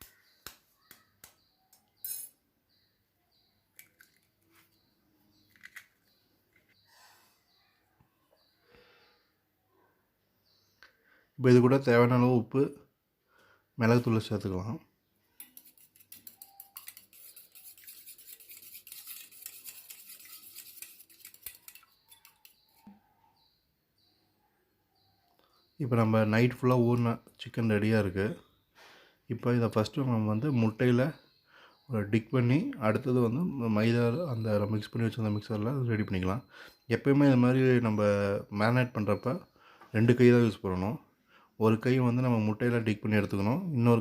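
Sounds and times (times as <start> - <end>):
eggs whisked in a bowl: 15.4 - 22.9.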